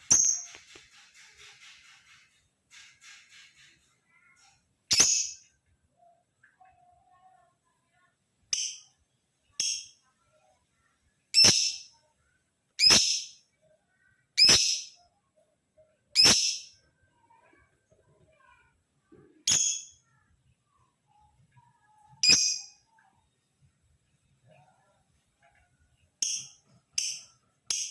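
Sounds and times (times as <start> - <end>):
lovebird shrill calls: 12.8 - 13.3.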